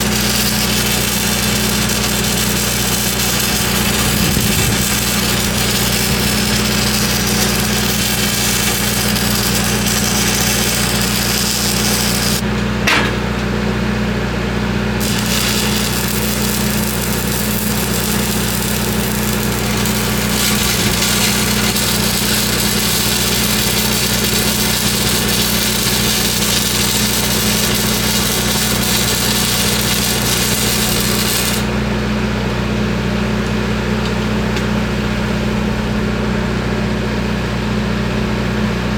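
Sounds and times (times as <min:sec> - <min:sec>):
welding arc crackling hiss: 0:00.0 - 0:12.4, 0:15.0 - 0:31.8
engine hum: 0:00.0 - 0:12.8, 0:14.3 - 0:33.1.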